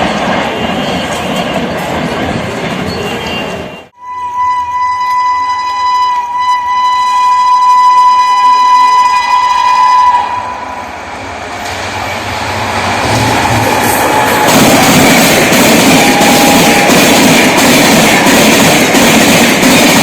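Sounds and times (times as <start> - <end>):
rolling train noise: 0.0 - 20.0
electric locomotive horn: 4.0 - 10.8.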